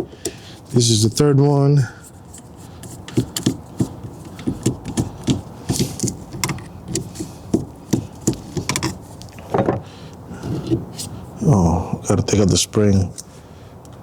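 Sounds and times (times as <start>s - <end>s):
screwdriver and screws rattling: 2.4s - 9.8s.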